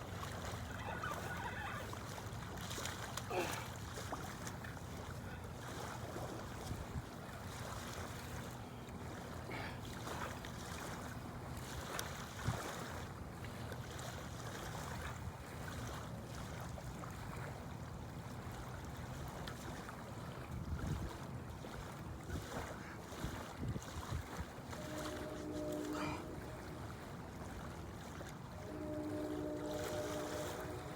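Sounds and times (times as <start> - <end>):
water: 0.0 - 30.9
wind on microphone: 20.5 - 21.2, 22.3 - 30.9.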